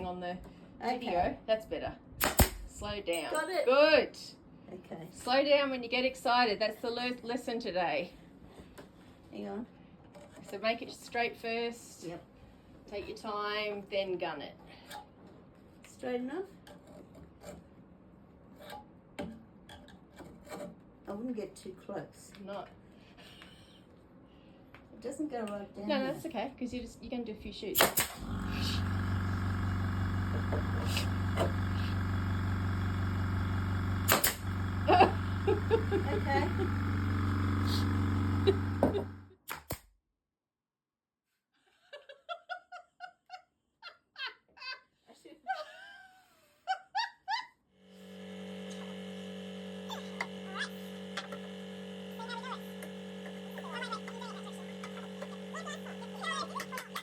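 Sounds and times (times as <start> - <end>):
pneumatic nail gun shot: 2.2 - 2.7, 27.8 - 29.2, 30.1 - 32.0, 33.9 - 34.8, 37.4 - 39.9
air compressor motor running: 27.8 - 39.4, 47.8 - 57.0
person laughing: 34.8 - 36.7, 45.5 - 47.6, 53.5 - 57.0
steady hum with fixed tones: 47.8 - 57.0.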